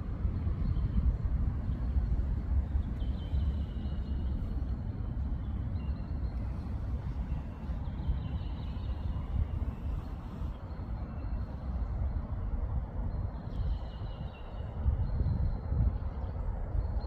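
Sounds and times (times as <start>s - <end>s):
faint high bird song: 0.2s - 17.0s.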